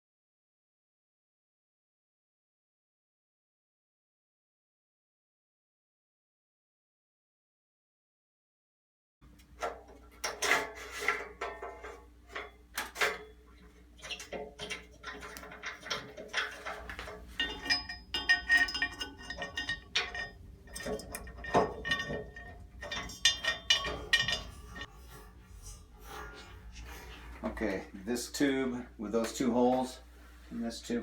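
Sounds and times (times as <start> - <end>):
metal parts clinking and knocking: 9.6 - 25.8.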